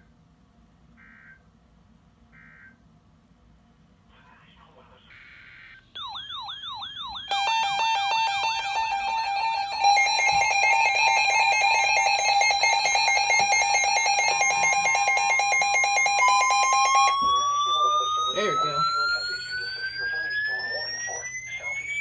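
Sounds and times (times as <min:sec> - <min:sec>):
fast pulsed beeping: 0:06.0 - 0:22.0
rising siren wail: 0:06.0 - 0:22.0
falling whooping chirp: 0:16.3 - 0:22.0.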